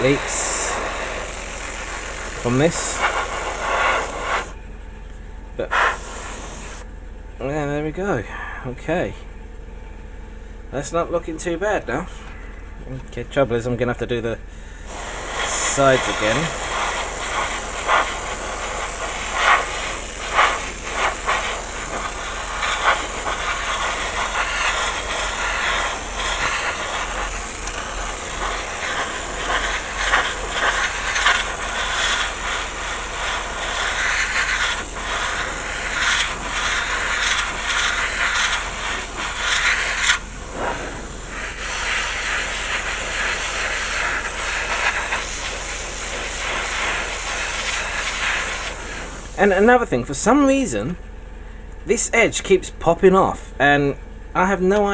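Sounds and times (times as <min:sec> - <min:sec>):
airbrush spraying hiss: 0:00.0 - 0:04.6, 0:05.6 - 0:06.9, 0:14.8 - 0:49.8.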